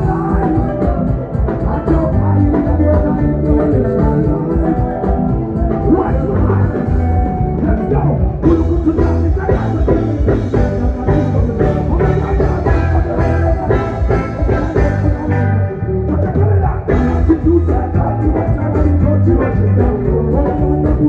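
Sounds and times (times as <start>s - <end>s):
heavy bass line: 0.0s - 21.0s
loud music with drum beat: 0.0s - 21.0s.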